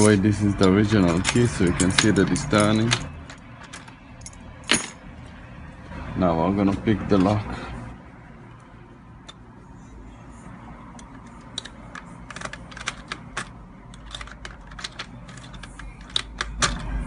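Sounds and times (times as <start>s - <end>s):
lock picks clicking: 10.9s - 17.0s.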